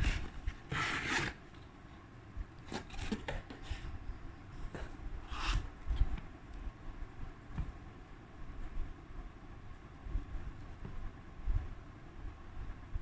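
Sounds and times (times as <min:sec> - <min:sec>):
packaging rustling and scraping: 0:00.0 - 0:01.7, 0:02.6 - 0:04.0.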